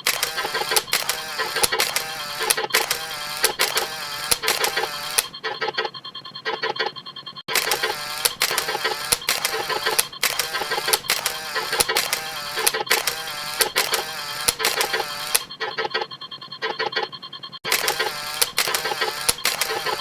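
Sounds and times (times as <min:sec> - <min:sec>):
camera shutter snaps: 0:00.0 - 0:05.3, 0:07.5 - 0:15.5, 0:17.7 - 0:20.0.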